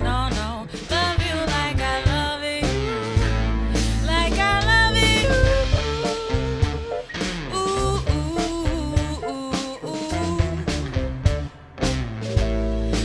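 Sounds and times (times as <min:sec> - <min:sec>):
bass line: 0:00.0 - 0:13.0
drum kit beat: 0:00.0 - 0:13.0
sliding melodic lead: 0:03.2 - 0:07.5, 0:10.2 - 0:13.0.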